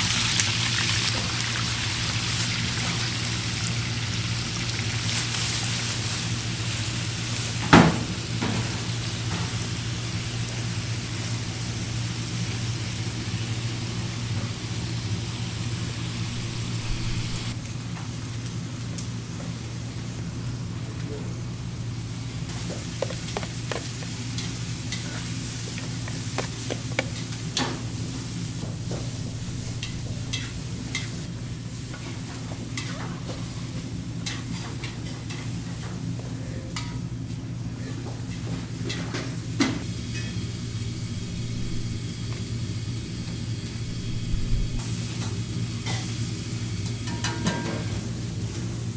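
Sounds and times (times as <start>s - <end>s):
faint sizzle: 0.0s - 48.9s
frying hiss: 0.0s - 48.9s
low mechanical hum: 0.0s - 48.9s
metal utensils clinking on pan: 47.0s - 47.9s.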